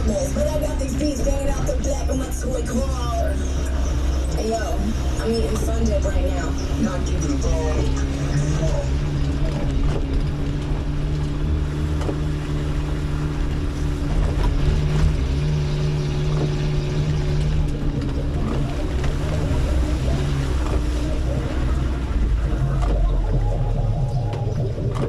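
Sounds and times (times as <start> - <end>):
vehicle engine running: 0.0 - 25.0
vehicle knocks and rattles: 8.9 - 25.0.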